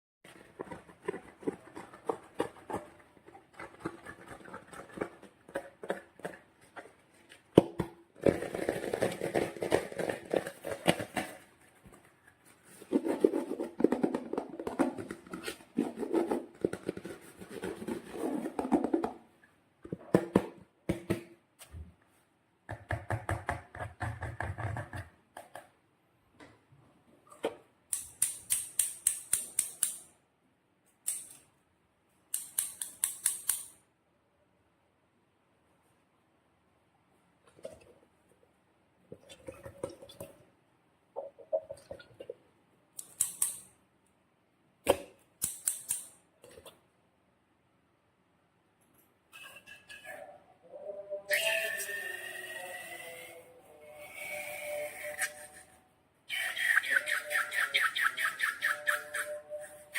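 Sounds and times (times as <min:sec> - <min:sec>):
hands working sticky slime: 0:00.3 - 0:07.1
quick sharp clicks: 0:32.3 - 0:33.8.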